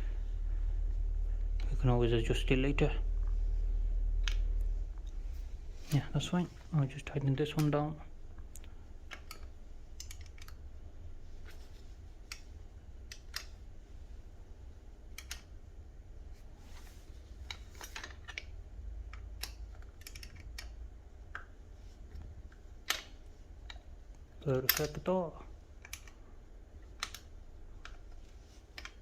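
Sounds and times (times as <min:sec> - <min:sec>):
steady low hum: 0:00.0 - 0:29.0
hand tools clicking on metal: 0:24.6 - 0:25.1.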